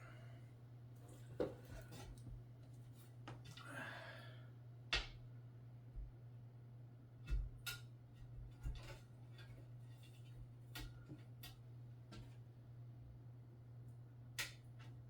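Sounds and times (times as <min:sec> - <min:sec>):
soft breath: 0:03.6 - 0:04.5.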